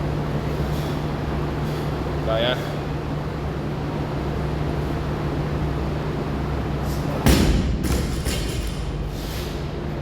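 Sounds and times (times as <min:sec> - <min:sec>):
steady low hum: 0:00.0 - 0:10.0
barbell dropped on floor thud: 0:07.3 - 0:08.9.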